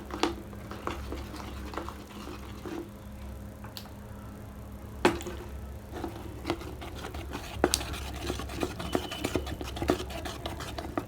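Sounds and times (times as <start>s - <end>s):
spoon scraping container: 0.7s - 2.9s, 5.9s - 11.0s.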